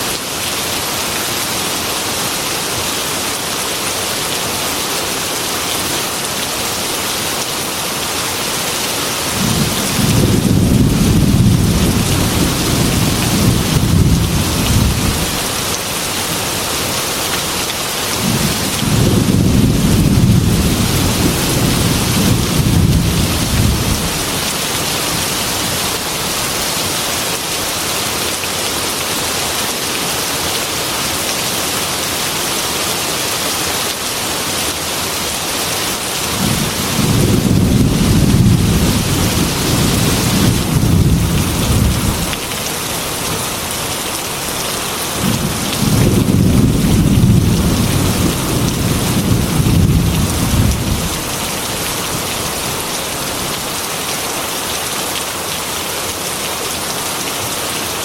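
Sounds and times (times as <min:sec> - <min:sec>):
heavy rain falling: 0:00.0 - 0:58.0
rolling thunder: 0:09.4 - 0:15.3, 0:18.2 - 0:24.2, 0:36.4 - 0:42.3, 0:45.2 - 0:51.2.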